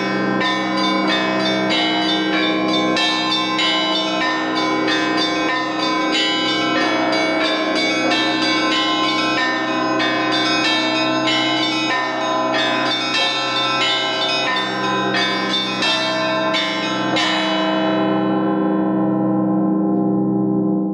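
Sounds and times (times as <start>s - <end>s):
church bells pealing: 0.0s - 20.9s.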